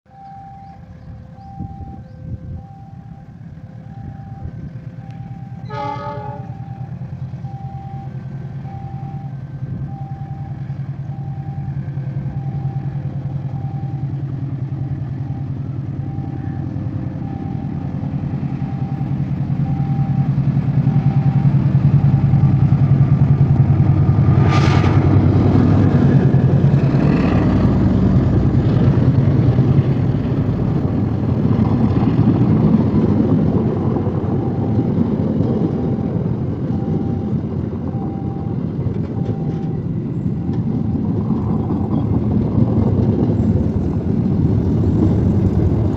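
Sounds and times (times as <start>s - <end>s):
level crossing alarm ringing: 0.1s - 11.7s, 18.6s - 22.4s, 36.7s - 41.0s
diesel locomotive rumble: 0.1s - 45.9s.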